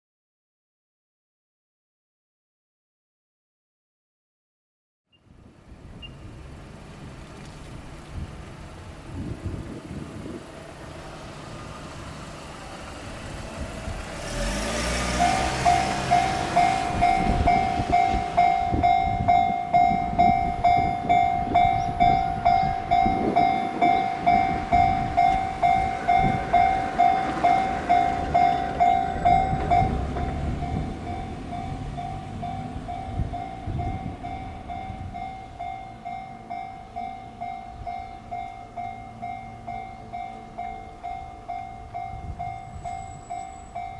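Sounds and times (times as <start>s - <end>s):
train rumbling past: 5.4s - 43.9s
level-crossing bell clanging: 15.2s - 43.9s.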